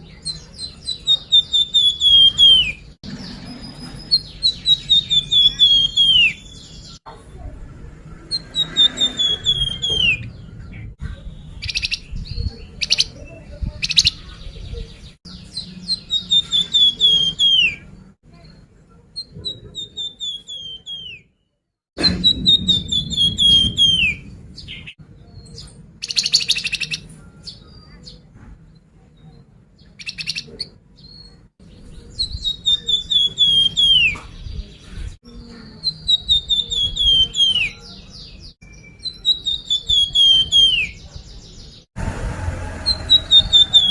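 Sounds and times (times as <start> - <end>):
songbird singing trilled phrases: 0.0 - 7.0, 8.3 - 21.4, 22.1 - 28.3, 29.2 - 34.7, 35.3 - 41.8.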